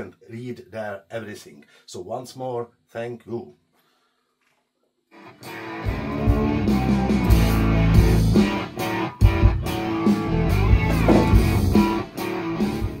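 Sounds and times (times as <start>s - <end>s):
guitar music with bass and drums: 5.2s - 13.0s.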